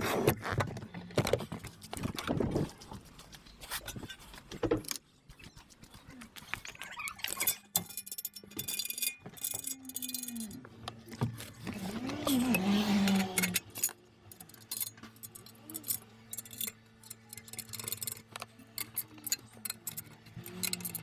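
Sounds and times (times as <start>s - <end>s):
clicks and knocks of tools handling parts: 0.4s - 21.0s
faint wavering hum: 5.2s - 21.0s.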